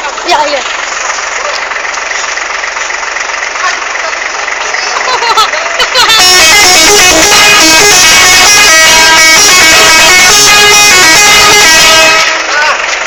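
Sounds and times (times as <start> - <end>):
tuned air horns playing tune: 6.1 - 12.6.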